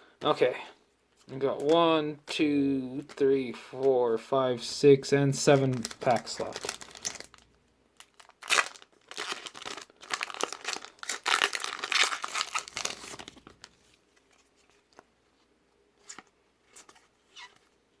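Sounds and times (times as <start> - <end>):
foil wrapper crinkling and tearing: 5.5 - 13.8.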